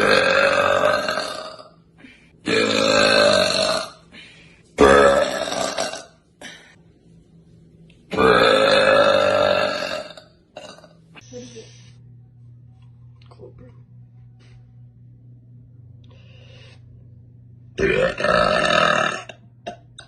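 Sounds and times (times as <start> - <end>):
woman burping: 0.0 - 1.8, 2.4 - 4.0, 4.8 - 6.6, 8.1 - 11.0, 17.8 - 20.0.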